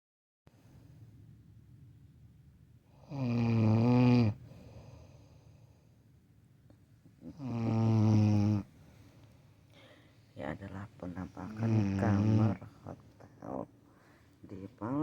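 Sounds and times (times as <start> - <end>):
person snoring loudly: 3.0 - 4.4, 7.3 - 8.6, 11.5 - 12.6.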